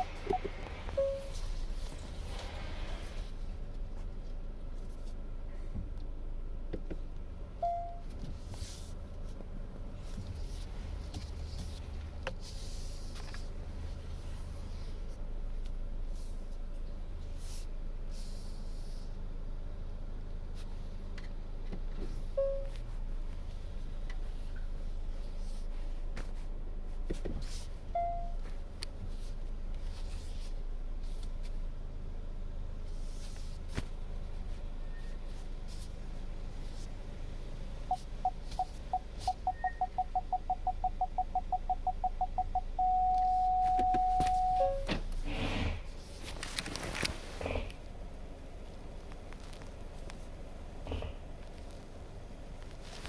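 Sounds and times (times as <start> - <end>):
car brakes squealing: 0.0 - 3.3, 34.8 - 35.3
brake squeal: 0.0 - 3.4, 34.7 - 36.0, 37.8 - 47.9
car low rumble: 0.0 - 53.0.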